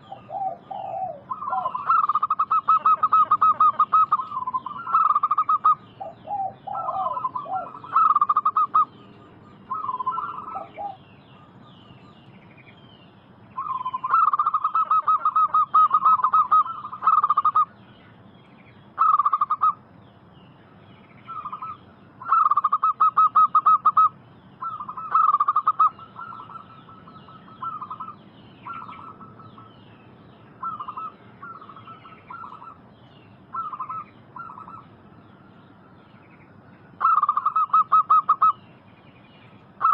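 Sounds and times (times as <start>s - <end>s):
doves cooing: 0.0s - 11.9s, 13.6s - 17.7s, 19.0s - 19.8s, 21.2s - 29.8s, 30.6s - 35.4s, 36.9s - 38.6s.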